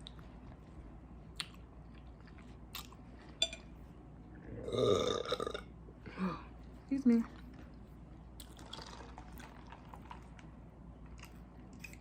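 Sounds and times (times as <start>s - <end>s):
person chewing: 1.3s - 3.6s, 7.4s - 10.4s, 11.0s - 12.0s
person burping: 4.5s - 5.7s.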